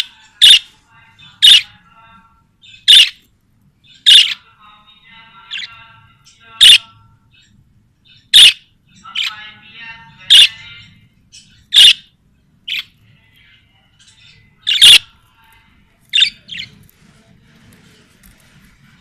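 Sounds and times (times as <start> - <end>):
budgerigar warbling chatter: 0.0 - 0.7, 1.4 - 1.8, 2.7 - 3.2, 4.0 - 4.4, 6.6 - 6.8, 8.1 - 9.4, 10.2 - 10.6, 11.4 - 12.1, 14.2 - 15.1, 16.1 - 16.7
budgerigar squawks: 0.4 - 0.7, 1.4 - 1.7, 2.8 - 3.2, 4.0 - 4.4, 8.2 - 8.6, 10.3 - 10.5, 11.7 - 12.1, 14.7 - 15.0.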